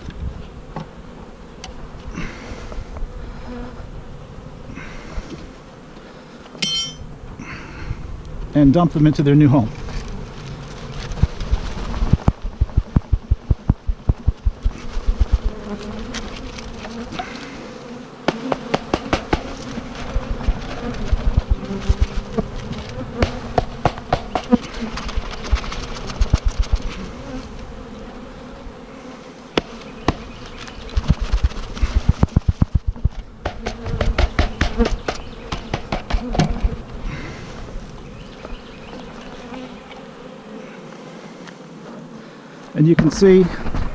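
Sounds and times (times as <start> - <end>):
bees buzzing loudly: 0.0 - 43.9
rapid knocking on box: 18.3 - 19.6, 23.2 - 24.7, 31.0 - 36.8.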